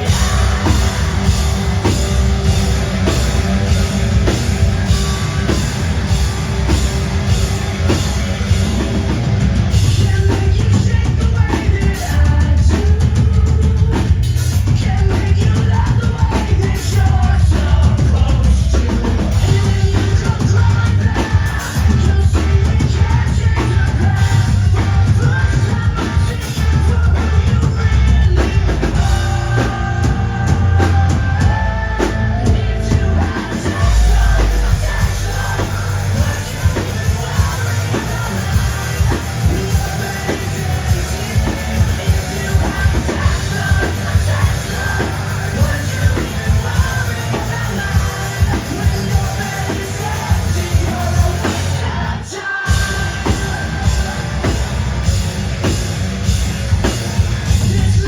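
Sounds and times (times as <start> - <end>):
distorted electric guitars: 0.0 - 58.0
pounding drum kit: 0.0 - 58.0
person singing: 9.7 - 54.7.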